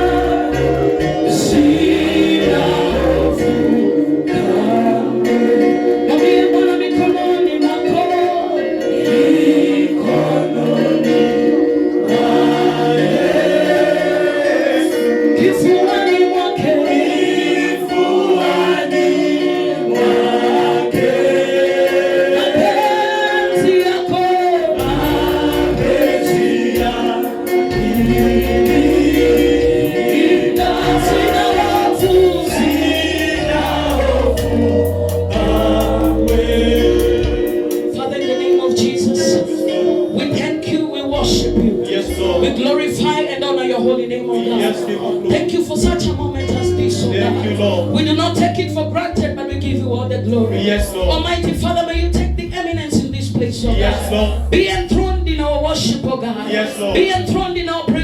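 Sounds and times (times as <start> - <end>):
low bass line: 0.0 - 3.8, 24.8 - 26.2, 27.7 - 30.0, 30.6 - 37.6, 41.2 - 42.6, 45.9 - 55.8, 56.9 - 57.6
church choir singing: 0.0 - 49.1, 53.6 - 55.0, 55.8 - 58.0
held accompaniment chord: 0.0 - 52.9.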